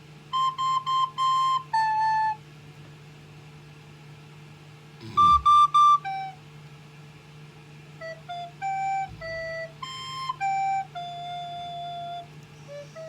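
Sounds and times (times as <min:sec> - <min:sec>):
child playing a recorder: 0:00.3 - 0:02.4, 0:05.2 - 0:06.4, 0:08.0 - 0:13.0.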